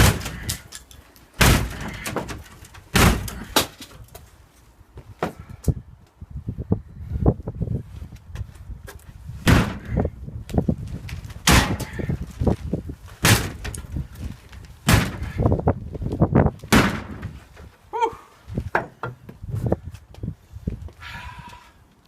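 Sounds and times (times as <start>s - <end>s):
sledgehammer blows: 0.0s - 0.7s, 1.4s - 3.9s, 9.4s - 10.2s, 11.4s - 12.5s, 13.2s - 14.0s, 14.8s - 15.8s, 16.5s - 17.5s.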